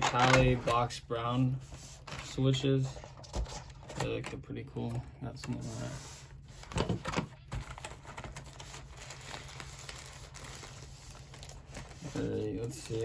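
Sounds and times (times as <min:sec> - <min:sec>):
packaging rustling: 0:05.4 - 0:13.0.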